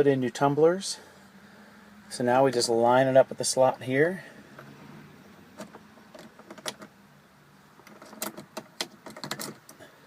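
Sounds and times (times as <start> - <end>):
faint steady hum: 0.0 - 10.0
key and lock metallic clicks: 7.8 - 9.8.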